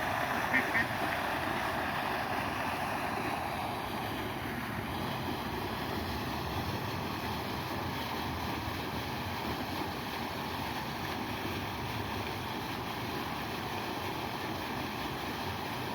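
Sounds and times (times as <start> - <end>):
steady rushing noise: 0.0 - 9.4.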